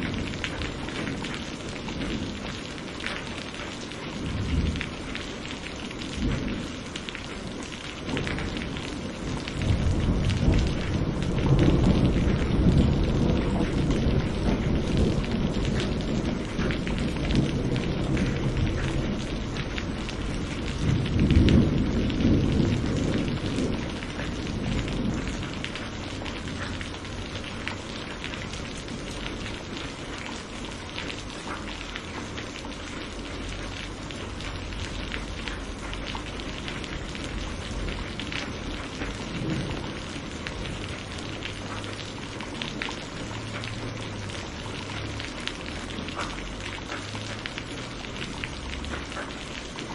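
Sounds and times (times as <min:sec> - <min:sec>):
steady rain: 0:00.0 - 0:49.9
rolling thunder: 0:04.2 - 0:05.2, 0:06.0 - 0:06.8, 0:08.0 - 0:29.8, 0:36.4 - 0:45.3.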